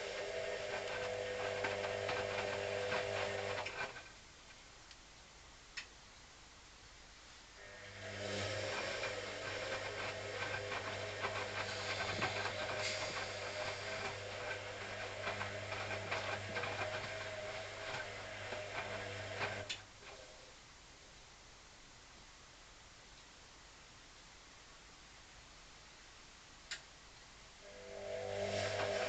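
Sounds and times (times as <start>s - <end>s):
washing machine humming: 0.0s - 4.2s, 7.6s - 20.5s, 27.6s - 29.0s.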